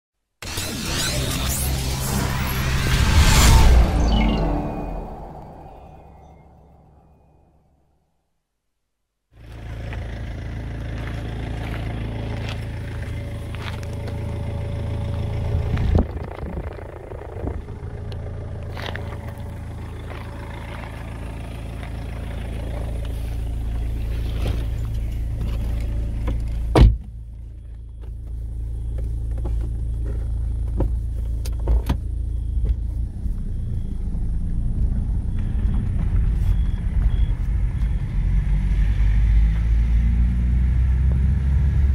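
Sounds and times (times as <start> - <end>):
diesel engine running: 0.4 - 7.2, 9.4 - 41.9.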